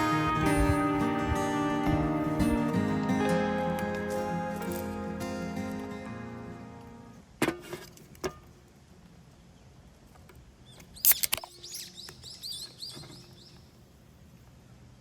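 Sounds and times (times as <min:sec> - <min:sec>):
background music: 0:00.0 - 0:07.2
bird chirping: 0:10.7 - 0:13.7.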